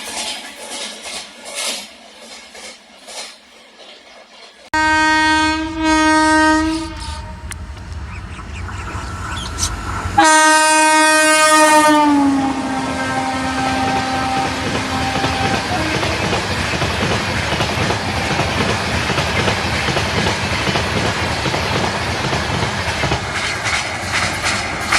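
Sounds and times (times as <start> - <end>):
train coaches clattering over rails: 0.0 - 12.0, 12.6 - 24.9
locomotive horn: 4.8 - 16.6.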